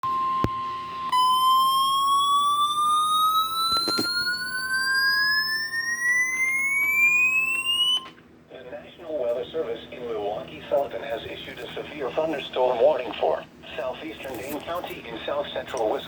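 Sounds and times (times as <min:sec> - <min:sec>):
alert tone rising in pitch: 0:01.1 - 0:08.1
steady attention tone: 0:01.1 - 0:08.1.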